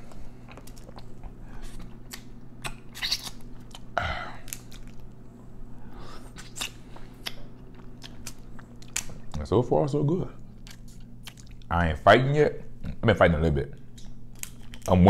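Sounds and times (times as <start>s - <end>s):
wet chewing and sucking: 0.1s - 5.1s, 6.0s - 9.2s, 10.5s - 11.7s
crab shell cracking: 2.1s - 5.2s, 6.4s - 9.4s, 13.9s - 15.0s.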